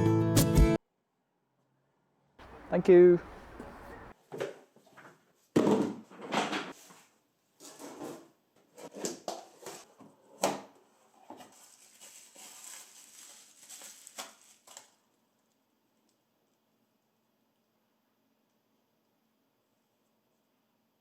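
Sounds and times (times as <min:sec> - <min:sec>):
small objects rustling: 0:11.4 - 0:15.0.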